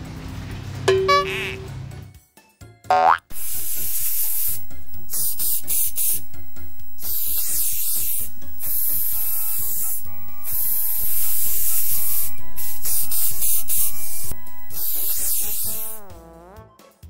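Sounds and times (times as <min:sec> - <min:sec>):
cartoon music with a beat: 0:00.9 - 0:01.8, 0:02.9 - 0:03.3
hissing spray: 0:03.3 - 0:16.2.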